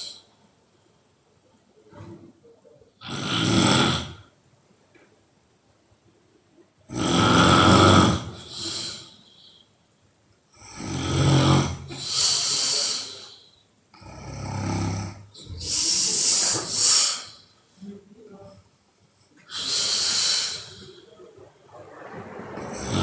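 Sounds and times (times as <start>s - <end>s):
woman snoring loudly: 3.0s - 4.2s, 6.9s - 9.1s, 10.6s - 13.2s, 14.0s - 16.8s, 22.6s - 23.0s.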